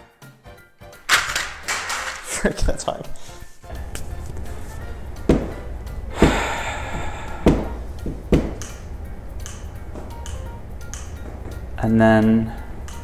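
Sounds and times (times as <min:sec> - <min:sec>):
loud knocks: 0:05.2 - 0:08.8.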